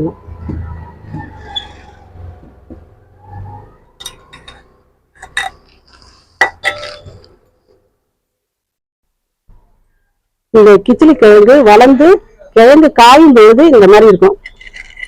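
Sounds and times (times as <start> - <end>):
metal vessels clinking: 4.0 - 7.4, 14.4 - 15.0.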